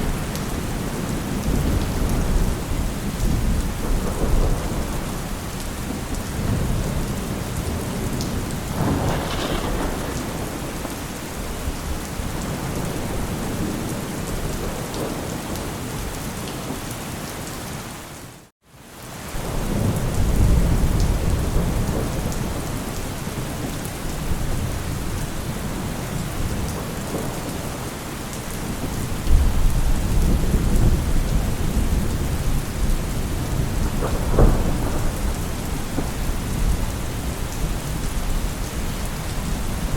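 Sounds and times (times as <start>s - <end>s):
thunder rumbling: 0.0s - 16.8s, 19.4s - 39.9s
heavy rain: 0.0s - 39.9s.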